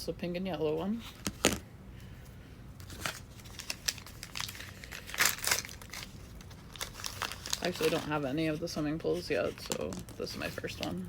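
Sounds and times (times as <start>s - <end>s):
plastic packaging crinkling: 2.8s - 11.0s.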